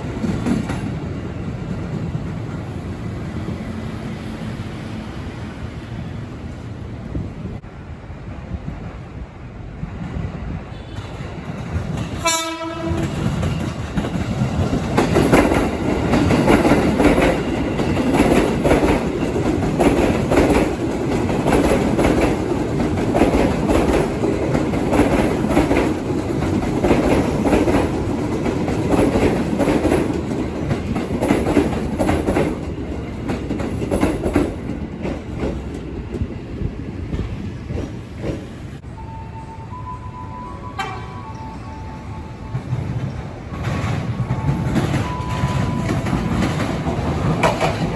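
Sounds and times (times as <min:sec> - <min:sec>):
train wheels clattering on rails: 0:00.0 - 0:03.6, 0:09.9 - 0:38.8, 0:42.4 - 0:47.9
train horn blast: 0:12.2 - 0:13.3, 0:39.0 - 0:41.7.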